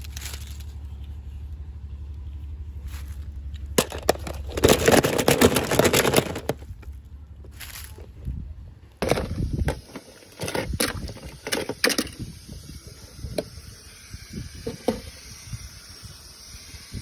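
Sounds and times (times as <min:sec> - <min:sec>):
plastic toy packaging clicks and rustles: 0:00.0 - 0:01.2, 0:02.9 - 0:06.9, 0:09.0 - 0:12.2.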